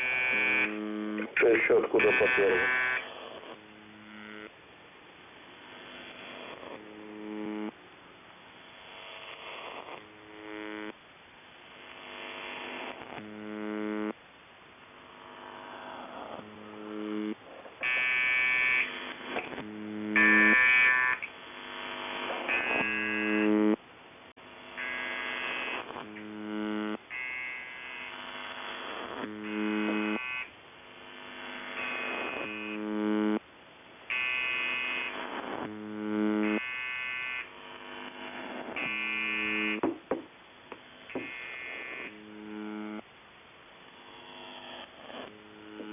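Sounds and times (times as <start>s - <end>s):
electric buzzer buzzing: 0.0s - 3.3s, 3.9s - 4.5s, 5.8s - 7.7s, 8.9s - 10.9s, 11.9s - 14.2s, 15.3s - 23.8s, 24.7s - 30.6s, 31.2s - 33.4s, 34.1s - 40.3s, 41.0s - 43.0s, 44.1s - 45.9s.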